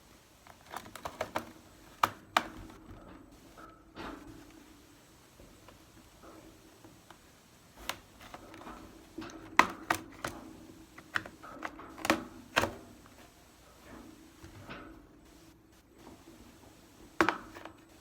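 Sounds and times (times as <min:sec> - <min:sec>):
plastic clips snapping loose: 0:00.4 - 0:02.8, 0:07.8 - 0:13.2.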